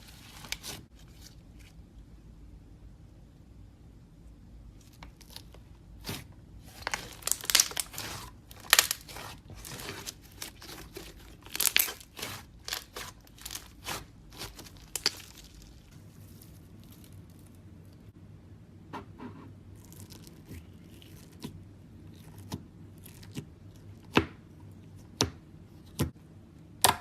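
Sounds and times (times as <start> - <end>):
slime crackling and crunching: 4.8 - 18.1, 19.8 - 21.5.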